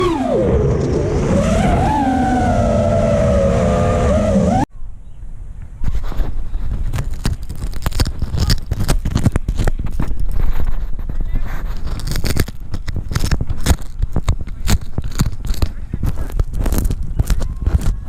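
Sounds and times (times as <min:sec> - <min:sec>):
drone motors whining: 0:00.0 - 0:04.7
irregular crackles and knocks: 0:05.7 - 0:18.0.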